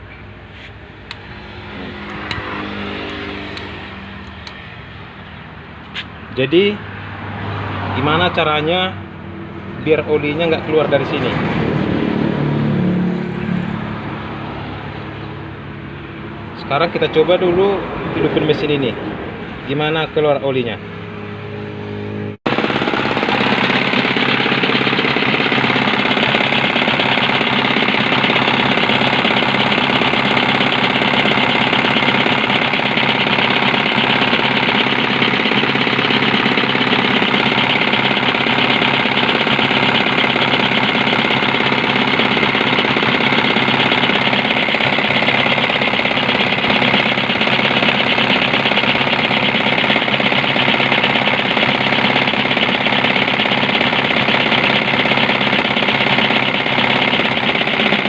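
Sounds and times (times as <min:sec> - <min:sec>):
diesel engine knocking: 0:22.5 - 0:58.0.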